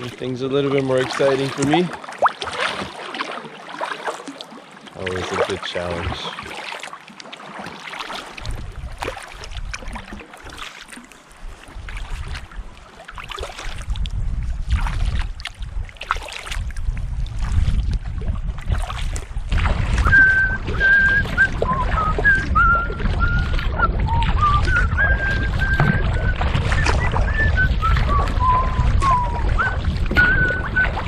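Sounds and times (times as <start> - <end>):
paddle strokes: 0.0 - 31.0
waves slapping against hull: 0.0 - 31.0
wind rumbling on microphone: 8.2 - 10.6, 11.2 - 31.0
short high whistled notes: 24.4 - 30.9.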